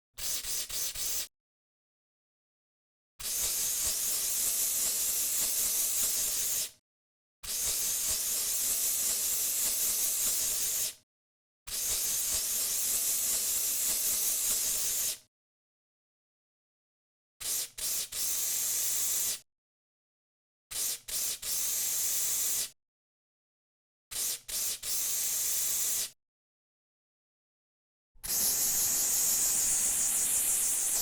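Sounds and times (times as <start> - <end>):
aerosol spray can hissing: 0.2 - 1.2, 17.4 - 19.4, 20.7 - 22.8, 24.1 - 26.2, 28.2 - 31.0.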